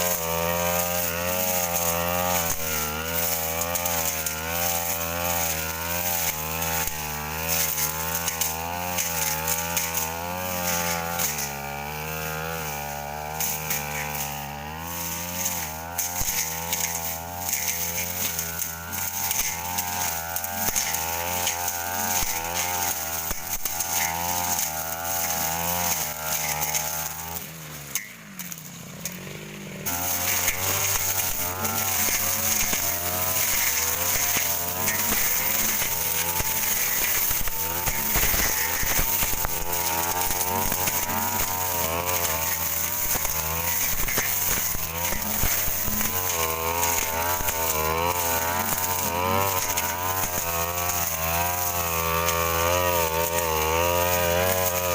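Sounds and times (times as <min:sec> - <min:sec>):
brush cutter engine under load: 0:00.0 - 0:54.9.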